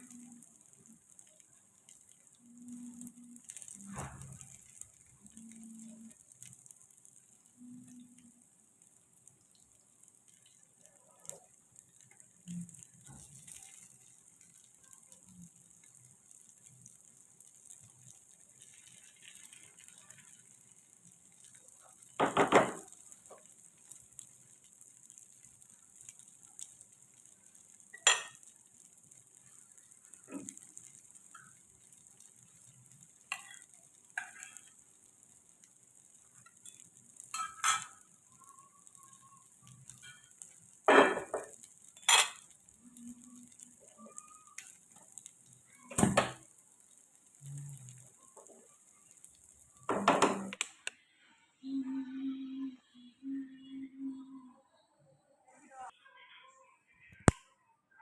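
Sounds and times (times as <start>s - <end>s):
faint high hiss: 0.0s - 57.5s
utensils clinking on cookware: 40.9s - 42.4s.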